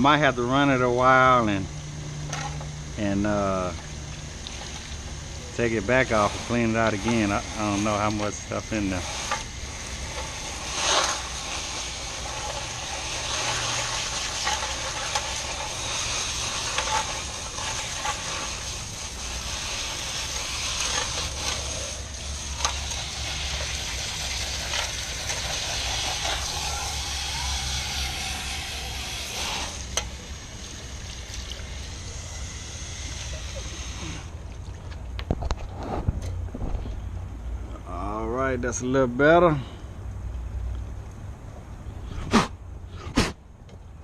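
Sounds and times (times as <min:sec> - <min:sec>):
steady low hum: 0:00.0 - 0:44.0
hose water spraying: 0:02.3 - 0:34.6.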